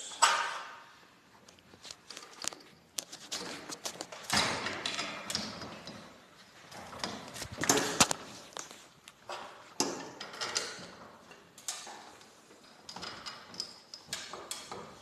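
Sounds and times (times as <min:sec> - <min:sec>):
metal tools clinking: 0:01.8 - 0:04.2.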